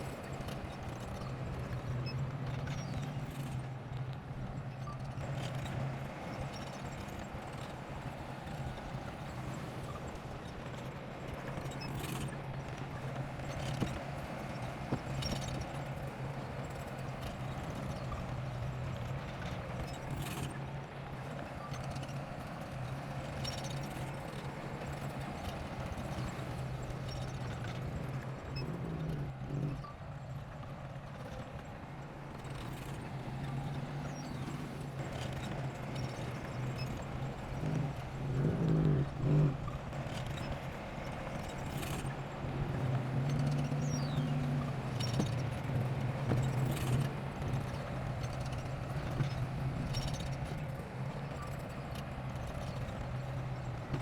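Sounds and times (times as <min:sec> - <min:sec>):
bulldozer diesel engine running: 0:32.6 - 0:54.0.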